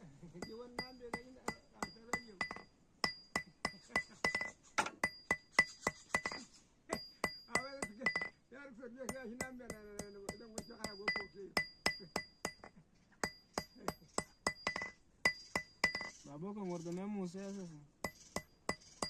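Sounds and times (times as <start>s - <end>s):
hammer striking metal on anvil: 0.4s - 8.4s, 9.1s - 16.2s.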